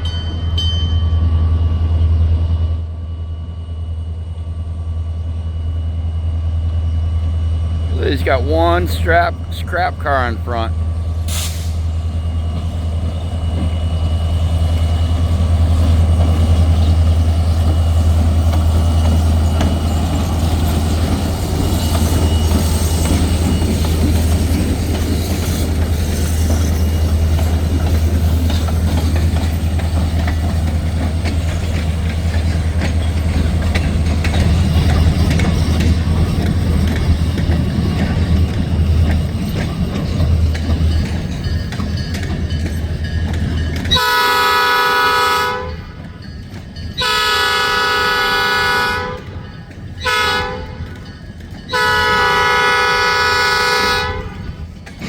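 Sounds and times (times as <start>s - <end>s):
freight train rumbling: 0.0s - 55.0s
wheels clicking over rail joints: 12.5s - 47.8s, 49.1s - 55.0s.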